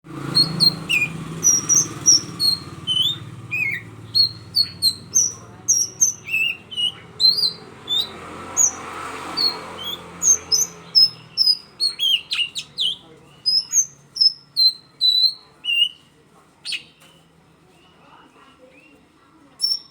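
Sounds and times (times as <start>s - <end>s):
bird singing whistles and chirps: 0.2s - 8.8s, 9.4s - 16.0s, 19.6s - 19.9s.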